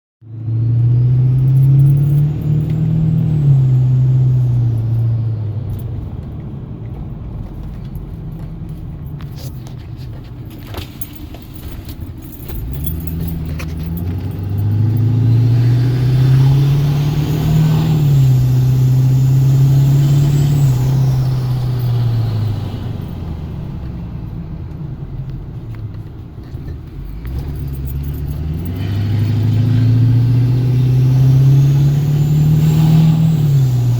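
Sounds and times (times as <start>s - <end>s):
diesel engine revving: 0.3s - 6.3s, 12.3s - 25.7s, 27.0s - 33.9s.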